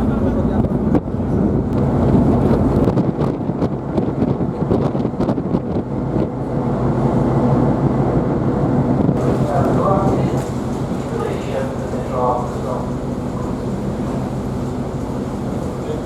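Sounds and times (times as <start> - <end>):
wind buffeting microphone: 0.0 - 16.0
ship engines humming: 6.4 - 16.0.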